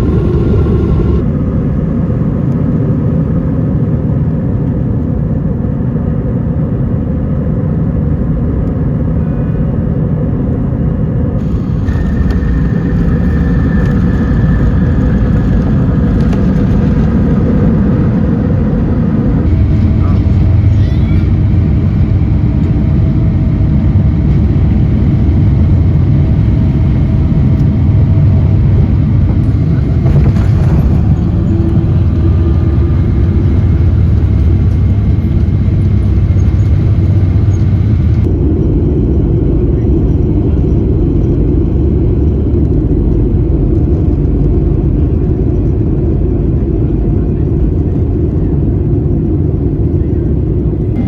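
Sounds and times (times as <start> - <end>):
jet airliner rumble: 0.0 - 51.0.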